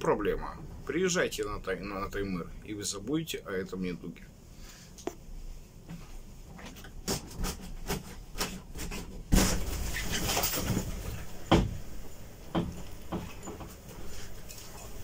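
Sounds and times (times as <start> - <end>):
knocks and crackles: 6.5 - 14.8.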